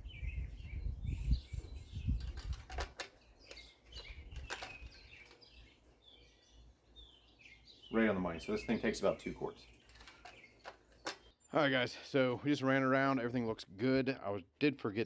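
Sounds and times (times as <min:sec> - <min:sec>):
small birds chirping: 0:00.0 - 0:15.0.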